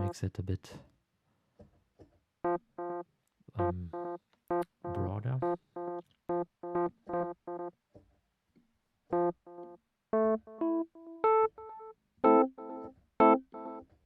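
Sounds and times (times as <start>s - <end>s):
electric piano notes with echoes: 3.6s - 7.7s, 9.1s - 13.8s.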